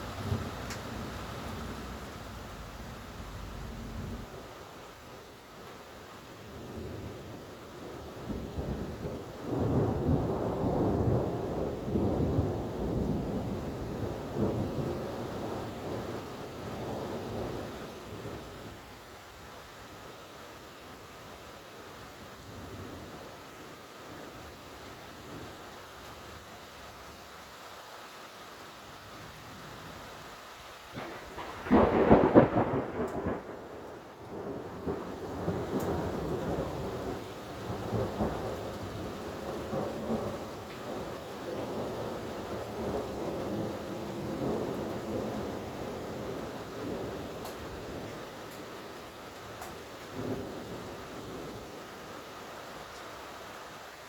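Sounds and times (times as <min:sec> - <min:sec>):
steady rain: 0:00.0 - 0:54.0
thunder rumbling: 0:08.2 - 0:17.7, 0:30.9 - 0:51.8.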